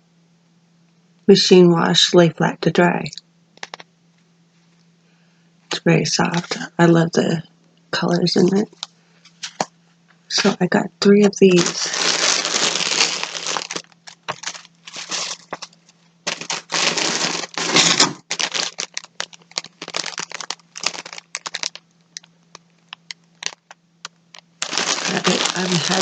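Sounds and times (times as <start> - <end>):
packaging crinkling: 3.6 - 3.8, 11.4 - 26.0.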